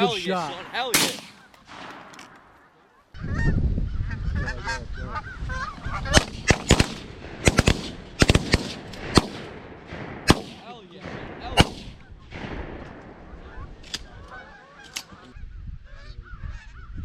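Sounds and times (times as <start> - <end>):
shotgun shots: 0.9 - 2.6, 6.1 - 14.2
geese honking: 4.1 - 6.2, 13.4 - 15.4.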